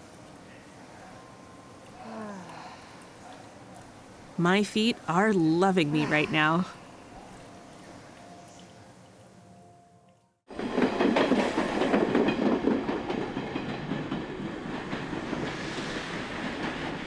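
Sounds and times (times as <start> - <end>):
train wheels clattering on rails: 10.5 - 17.0.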